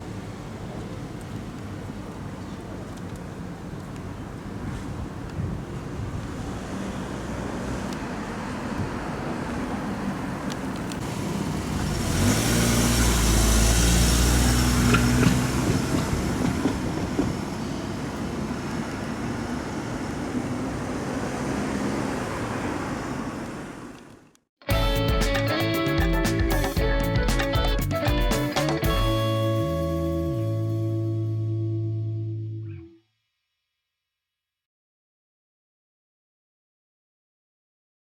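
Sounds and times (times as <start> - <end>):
background traffic noise: 0.0 - 25.0
vehicle passing close by: 6.0 - 23.9.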